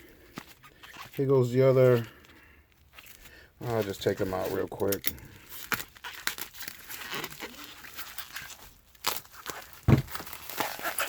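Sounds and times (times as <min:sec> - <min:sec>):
packaging rustling and crinkling: 0:00.0 - 0:11.0
thump: 0:09.9 - 0:10.2.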